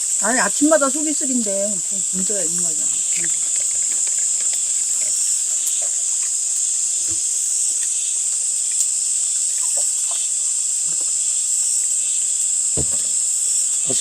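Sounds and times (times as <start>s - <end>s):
insects chorus: 0.0s - 14.0s
faint soft knocks: 12.8s - 13.4s.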